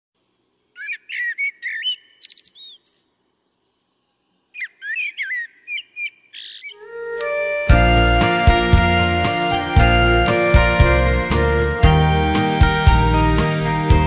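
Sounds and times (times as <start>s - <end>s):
songbird singing: 0.2s - 8.6s.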